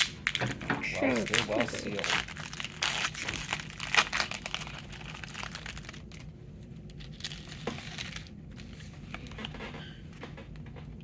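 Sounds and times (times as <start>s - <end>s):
foil wrapper crinkling and tearing: 0.0s - 9.4s.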